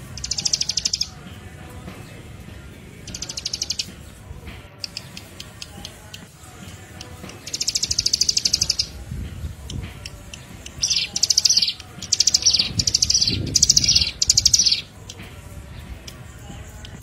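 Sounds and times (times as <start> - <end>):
songbird trilling: 0.0 - 1.2, 3.0 - 3.9, 4.8 - 9.0, 9.6 - 15.2.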